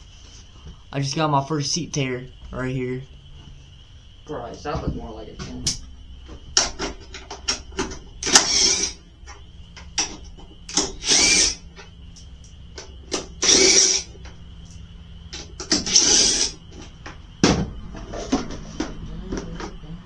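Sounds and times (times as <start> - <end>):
sharp clicks: 6.6 - 17.2
power drill bursts: 8.2 - 9.0, 10.0 - 11.8, 13.1 - 14.2, 15.4 - 16.6.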